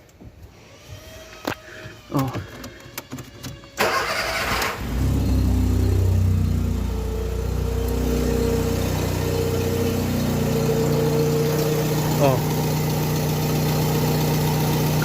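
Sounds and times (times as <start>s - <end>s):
starter motor cranking: 0.6s - 5.3s
car engine idling: 3.8s - 15.0s.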